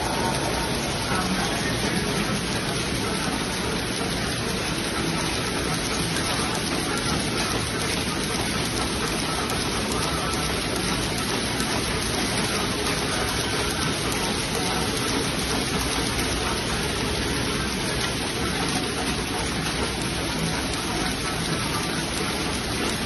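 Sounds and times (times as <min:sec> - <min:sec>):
knitting machine running: 0:00.0 - 0:23.0.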